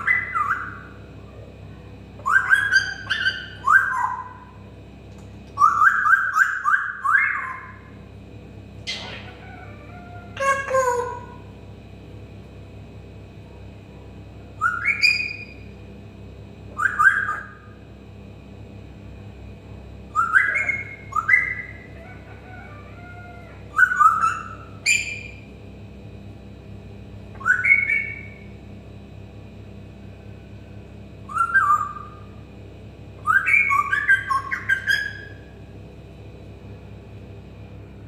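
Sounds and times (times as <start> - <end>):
parrot meow-like calls: 8.8 - 11.5, 20.1 - 25.4.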